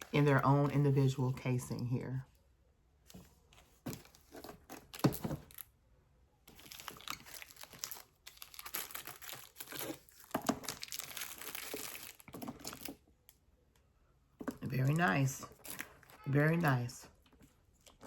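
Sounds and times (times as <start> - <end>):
plastic wrapping crinkling: 6.5 - 13.2, 14.6 - 18.0.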